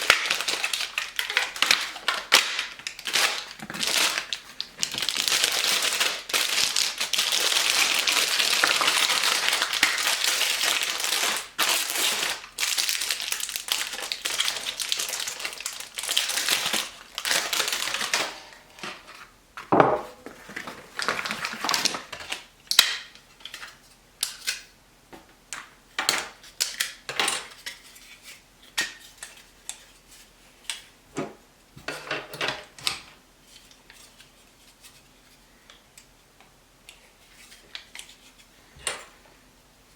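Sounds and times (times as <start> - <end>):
plastic packaging rustling: 0.0 - 19.3, 20.2 - 22.5.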